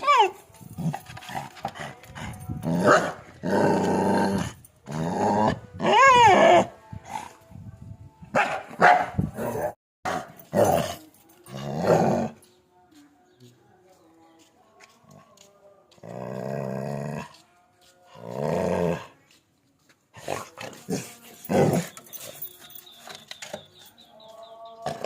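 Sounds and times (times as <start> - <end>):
dogs barking and growling: 0.0 - 7.4, 8.4 - 12.5, 16.0 - 17.5, 20.2 - 22.7.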